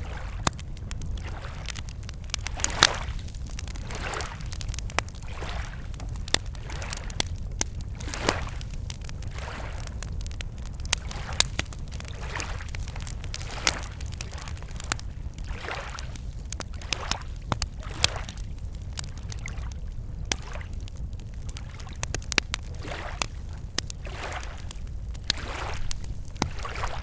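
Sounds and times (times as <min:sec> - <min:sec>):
steady low rumble: 0:00.0 - 0:15.5
campfire wood crackling: 0:00.0 - 0:27.0
lake waves lapping shore: 0:02.5 - 0:04.6, 0:05.2 - 0:05.8, 0:08.0 - 0:08.7, 0:09.3 - 0:09.9, 0:24.0 - 0:24.6, 0:25.3 - 0:27.0.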